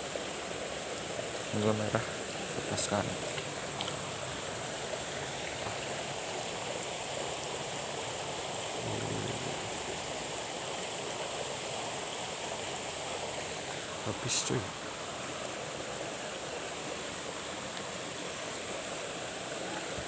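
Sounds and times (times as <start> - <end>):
running water rushing: 0.0 - 20.0
high insect buzz: 8.6 - 12.2.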